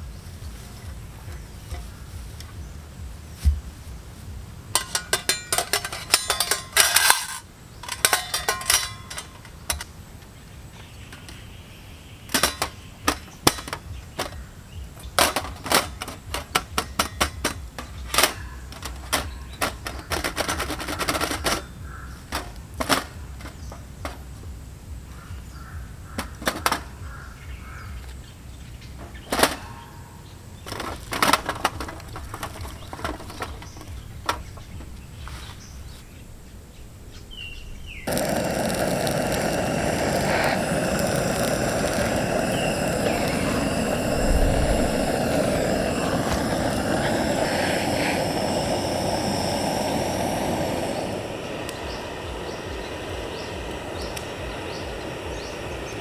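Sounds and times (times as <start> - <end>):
cooking gear clicking and knocking: 4.7 - 10.0, 12.3 - 24.5, 26.2 - 27.1, 29.3 - 29.8, 30.7 - 35.2, 38.1 - 51.1
cooking gear rattling: 4.7 - 10.0, 12.3 - 14.4, 15.0 - 24.4, 30.7 - 35.3, 38.1 - 51.5.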